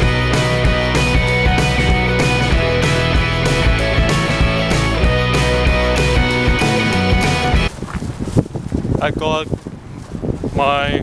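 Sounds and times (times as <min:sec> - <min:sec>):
rock music: 0:00.0 - 0:07.7.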